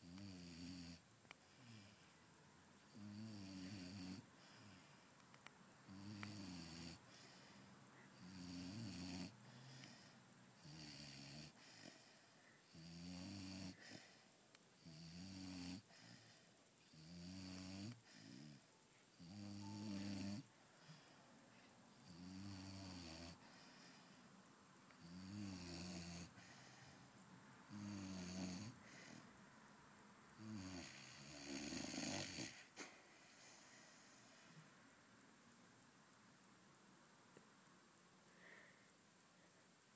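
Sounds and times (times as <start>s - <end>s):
puppy snoring: 0.0s - 1.0s, 2.9s - 4.8s, 5.9s - 7.5s, 8.1s - 14.2s, 14.8s - 21.2s, 21.9s - 24.0s, 24.9s - 26.9s, 27.7s - 29.2s, 30.4s - 34.2s.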